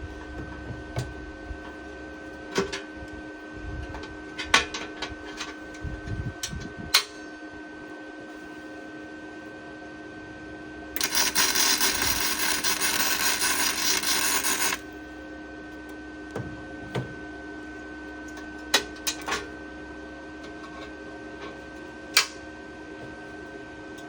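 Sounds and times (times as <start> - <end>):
welding crackle: 11.0 - 14.8
welder humming: 11.0 - 15.0.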